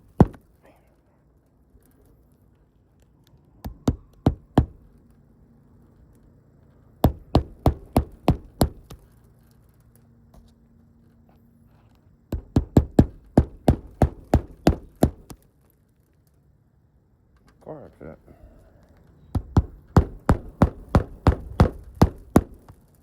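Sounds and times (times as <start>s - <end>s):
sharp knocks: 0.1s - 0.4s, 3.6s - 4.8s, 7.0s - 9.0s, 12.3s - 15.4s, 19.4s - 22.7s.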